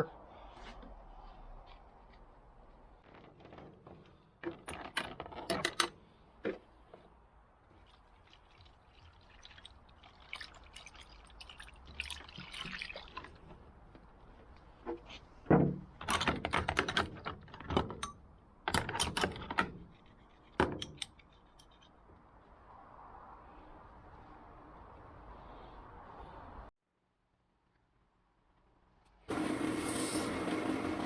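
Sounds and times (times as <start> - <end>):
liquid pouring: 7.8 - 13.5, 29.3 - 31.0.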